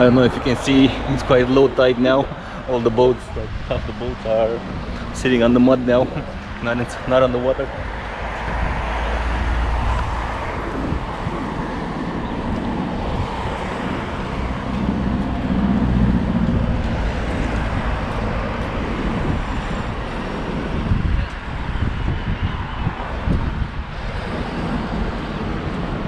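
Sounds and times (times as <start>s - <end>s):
outdoor background noise: 0.0s - 26.0s
vehicle engine rumbling: 0.0s - 26.0s.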